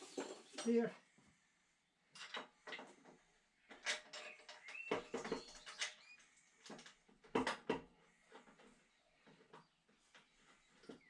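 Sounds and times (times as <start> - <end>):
metal tools clinking and rattling: 3.7 - 6.0.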